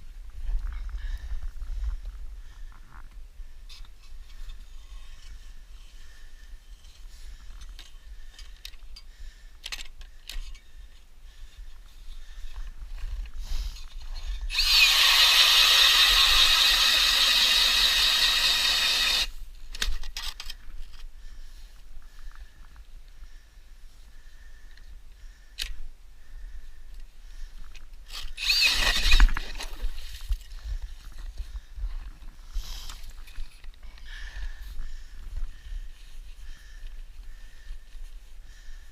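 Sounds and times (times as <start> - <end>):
drill motor whine: 14.5 - 19.3, 28.1 - 29.7.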